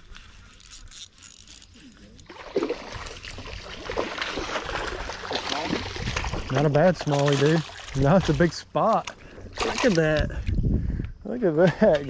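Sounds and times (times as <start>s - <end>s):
creek water splashing: 1.8s - 10.3s.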